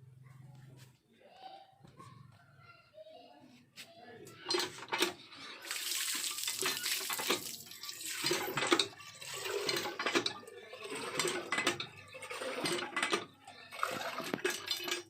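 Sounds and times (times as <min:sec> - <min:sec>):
metal vessel clinking: 0:04.5 - 0:15.0
water sloshing in a metal pot: 0:04.5 - 0:15.0.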